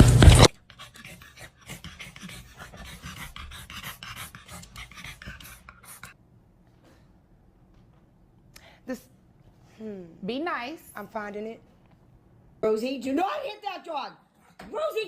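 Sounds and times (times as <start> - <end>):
dog panting: 0.4 - 6.2.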